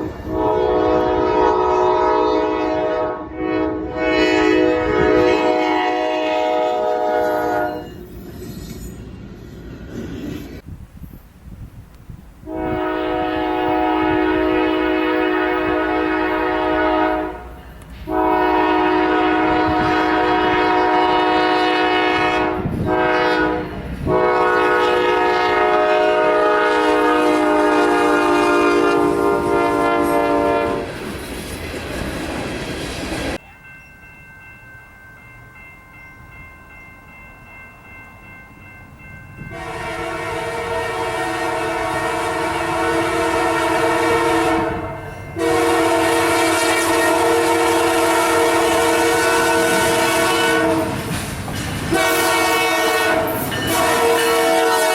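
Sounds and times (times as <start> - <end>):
locomotive air horn chord: 0.0 - 8.0, 12.4 - 30.9, 39.5 - 51.1, 51.9 - 54.9
train rumble: 0.0 - 54.9.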